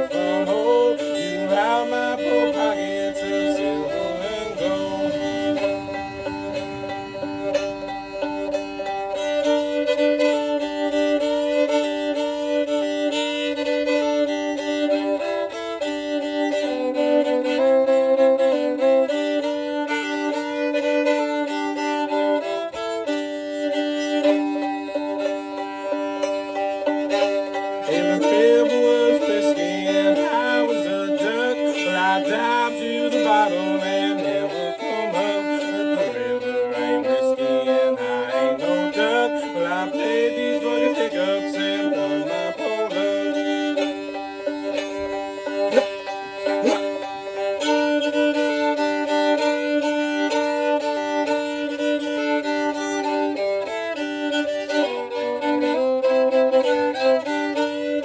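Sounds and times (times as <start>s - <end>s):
fiddle drone note: 0.0s - 58.0s
fiddle melody: 0.0s - 58.0s
banjo: 24.1s - 49.7s.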